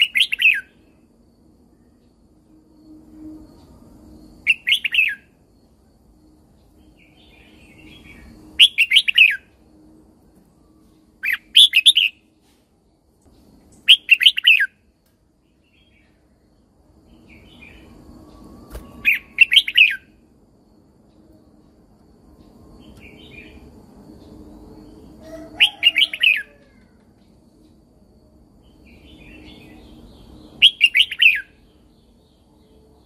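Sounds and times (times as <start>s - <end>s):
bird warbling song: 6.8s - 9.5s, 17.1s - 20.0s, 28.9s - 32.4s.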